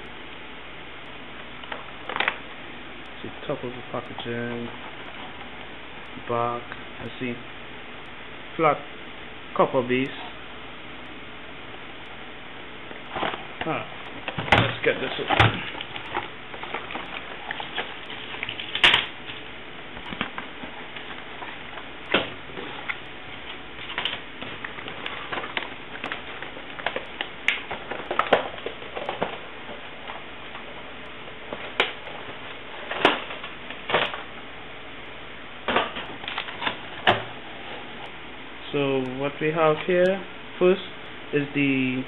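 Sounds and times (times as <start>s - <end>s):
cardboard packaging rustling: 1.7s - 2.4s, 12.9s - 34.4s.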